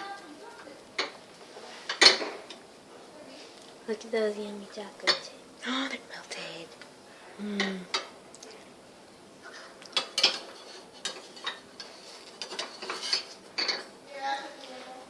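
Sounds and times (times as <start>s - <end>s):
utensils clinking against pan: 1.8s - 2.6s, 9.9s - 13.9s.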